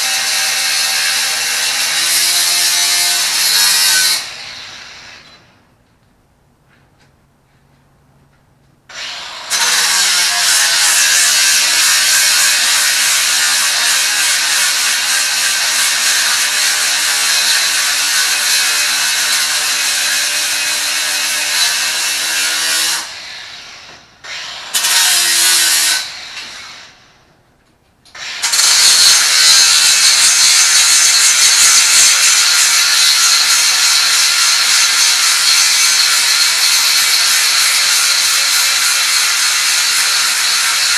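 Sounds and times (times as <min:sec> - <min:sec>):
angle grinder grinding: 0:28.2 - 0:40.9.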